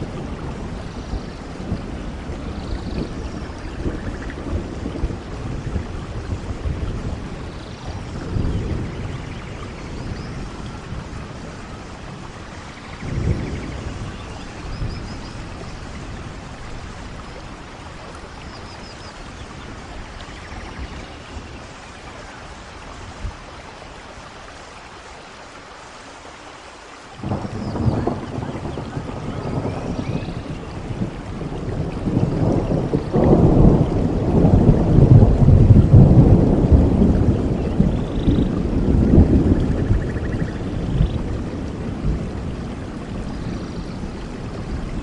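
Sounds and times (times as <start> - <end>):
sharp crack of thunder: 0.0 - 17.3, 27.2 - 45.0
thunder rumbling: 0.0 - 24.6, 27.2 - 45.0
steady rain: 0.0 - 45.0.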